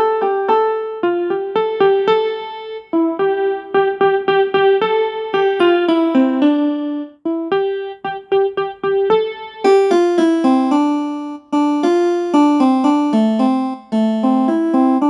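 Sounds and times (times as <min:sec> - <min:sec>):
ringtone melody on keyboard: 0:00.0 - 0:15.0.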